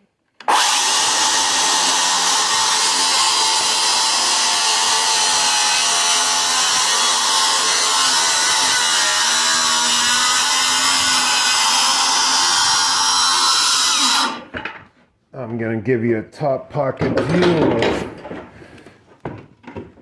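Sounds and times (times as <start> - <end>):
power tool cutting wood: 0.4 - 14.5.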